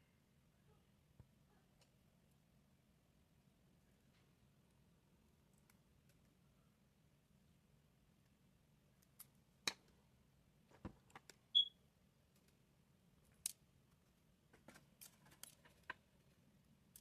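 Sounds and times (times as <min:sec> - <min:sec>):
small tools clicking and tapping: 0:13.3 - 0:16.0.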